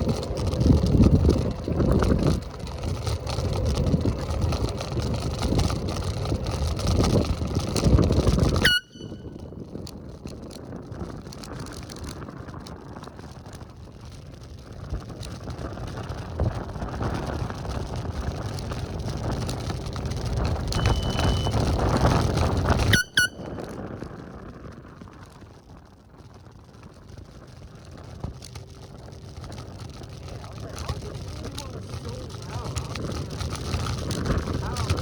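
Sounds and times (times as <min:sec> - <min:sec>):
rushing wind and road noise: 0:00.0 - 0:35.0
brief high beep: 0:08.6 - 0:09.4, 0:20.8 - 0:21.7, 0:22.8 - 0:23.6
short rising chirp: 0:08.7 - 0:09.2, 0:20.8 - 0:21.6.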